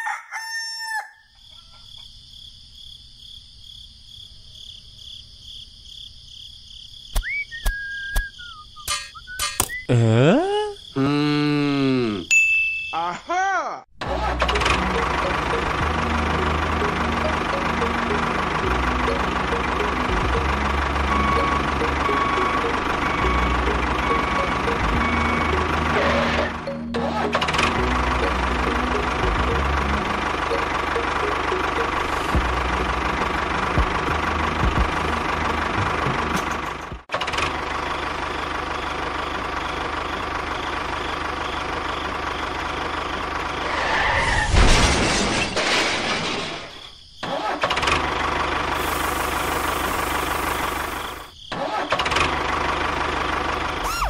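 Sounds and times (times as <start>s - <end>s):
tractor engine running: 14.0s - 44.0s, 45.6s - 54.0s.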